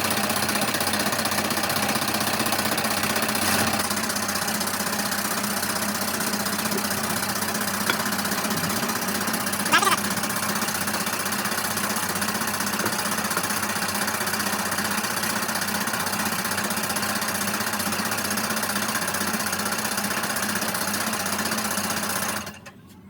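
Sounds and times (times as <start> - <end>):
workshop machinery humming: 2.7 - 16.9.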